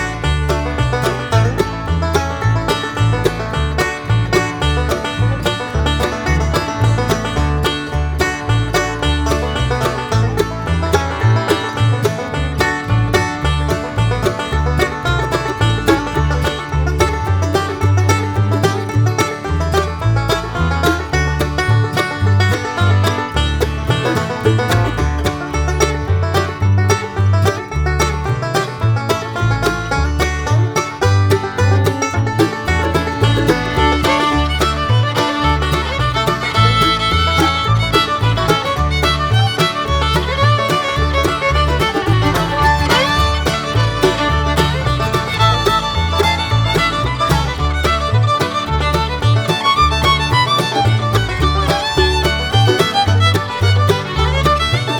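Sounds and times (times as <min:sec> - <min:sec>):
bluegrass tune with banjo and fiddle: 0:00.0 - 0:54.9.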